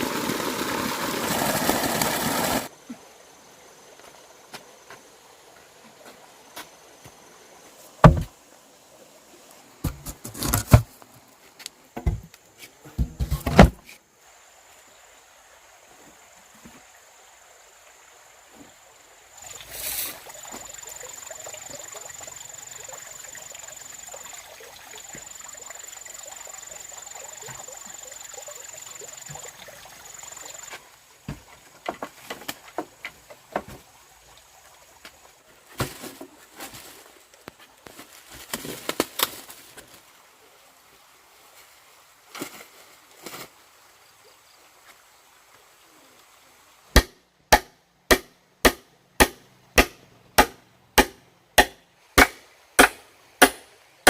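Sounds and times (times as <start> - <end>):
tool striking wood: 8.0 - 8.3, 47.0 - 53.7
hiss: 19.4 - 20.7.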